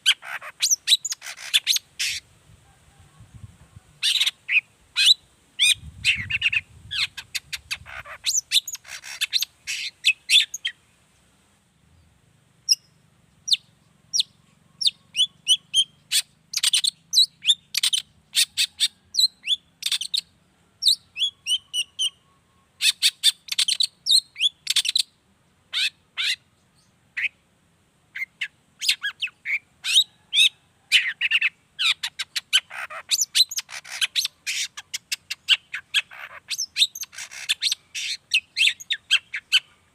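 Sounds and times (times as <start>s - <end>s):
bird singing sharp chattering notes: 0.0s - 2.2s, 4.0s - 10.8s, 31.0s - 39.7s.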